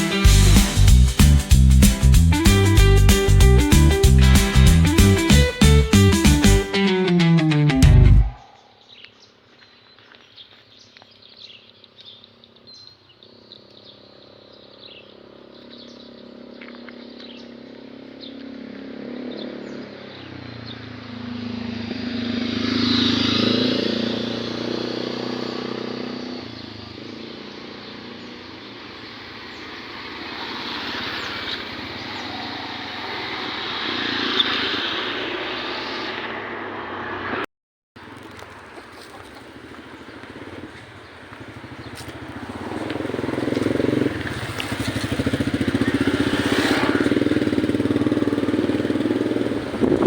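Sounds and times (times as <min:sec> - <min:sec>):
vehicle engine running: 0:00.0 - 0:06.6, 0:38.3 - 0:50.0
bird chirps: 0:08.2 - 0:20.9, 0:30.4 - 0:33.4, 0:38.8 - 0:46.1.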